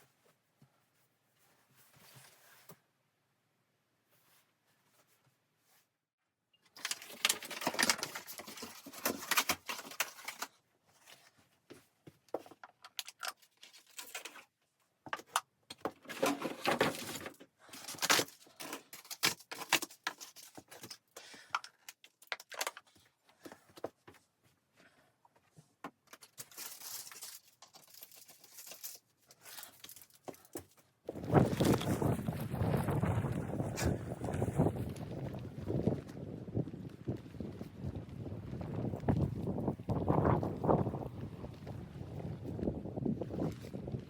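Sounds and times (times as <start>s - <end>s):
handling noise rustling and clicks: 6.5s - 24.4s, 25.3s - 32.9s.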